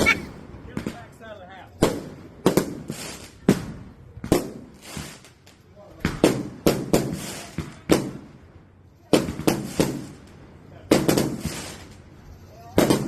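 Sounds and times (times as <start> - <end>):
firecrackers banging: 0.0 - 13.0.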